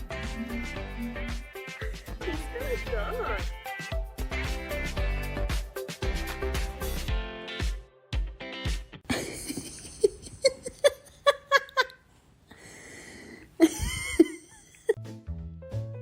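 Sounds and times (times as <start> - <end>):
person laughing: 0.2 - 1.3, 9.1 - 12.1, 13.2 - 15.0
breathy gasps: 12.5 - 13.6.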